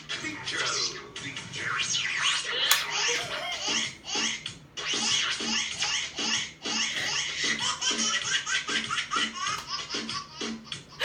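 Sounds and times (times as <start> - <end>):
laughter ringtone: 2.8 - 4.4.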